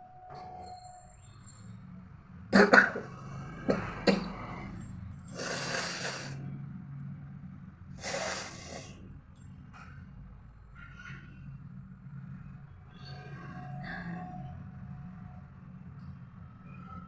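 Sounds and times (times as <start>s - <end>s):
woman blowing her nose: 5.3s - 6.4s, 8.0s - 8.9s.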